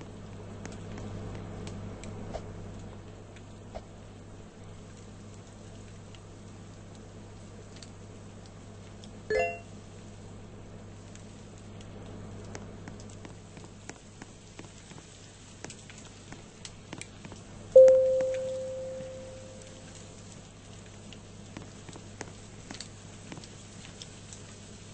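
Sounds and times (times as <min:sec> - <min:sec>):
faint scattered clicks: 0:11.1 - 0:24.6
ringing note: 0:17.8 - 0:19.8
low hum: 0:17.8 - 0:20.0.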